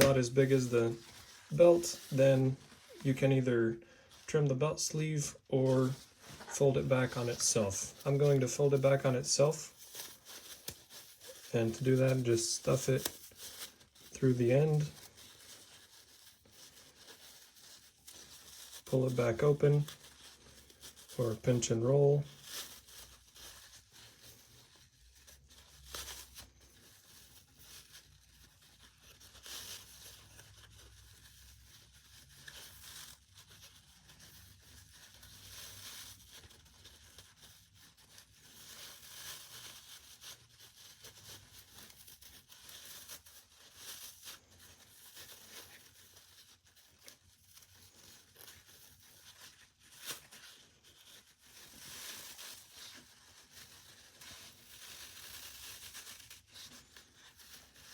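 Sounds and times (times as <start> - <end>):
short velcro tearing: 0.0 - 3.3
nylon and velcro rustling: 0.0 - 57.9.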